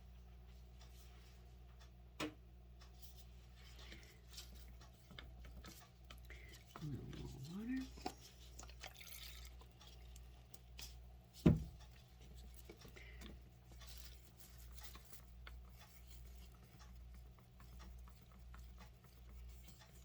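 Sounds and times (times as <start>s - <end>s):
low electrical hum: 0.0s - 20.0s
dull thump: 11.4s - 11.7s.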